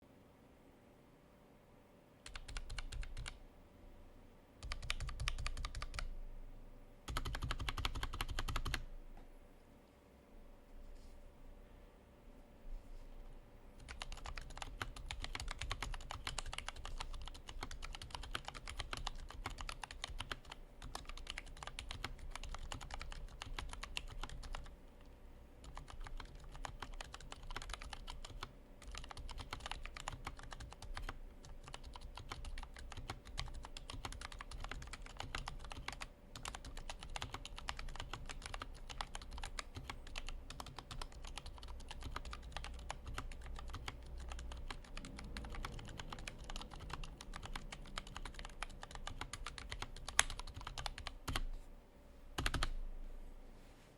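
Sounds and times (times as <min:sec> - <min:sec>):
fast typing on mechanical keyboard: 0:02.2 - 0:03.4, 0:04.6 - 0:06.1, 0:07.1 - 0:08.9, 0:13.8 - 0:24.8, 0:25.6 - 0:51.5, 0:52.4 - 0:52.8.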